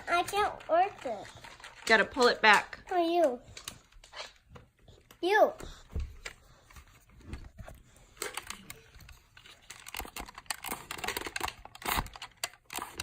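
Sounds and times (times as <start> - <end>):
plastic toy blaster clicks and rattling: 0.0 - 4.3, 8.2 - 13.0.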